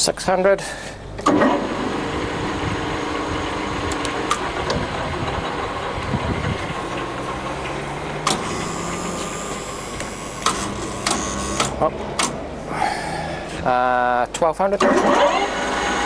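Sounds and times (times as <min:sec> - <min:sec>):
lathe running with whine: 0:01.5 - 0:11.8, 0:15.2 - 0:16.0
lathe gear clicks: 0:06.6 - 0:12.4.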